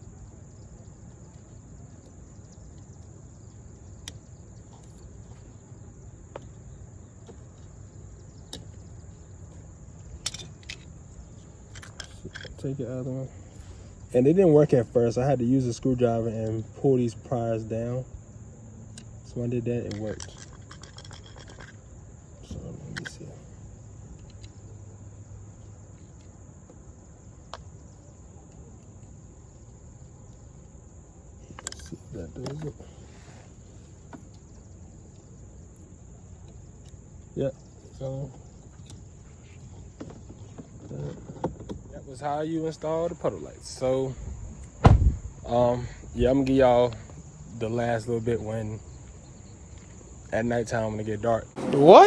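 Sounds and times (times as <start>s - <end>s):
crickets chirping: 0.0s - 52.0s
high-pitched tone: 51.6s - 52.0s.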